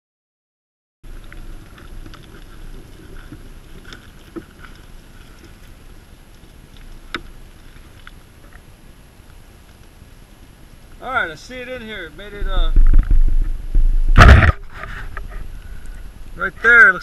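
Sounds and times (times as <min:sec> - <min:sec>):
muffled rustling and handling: 0:01.1 - 0:08.7
sharp knocks: 0:12.7 - 0:14.7.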